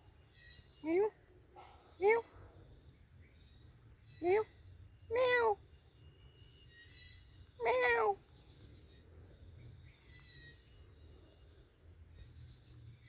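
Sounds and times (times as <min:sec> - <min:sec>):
cat meowing: 0:07.6 - 0:08.2.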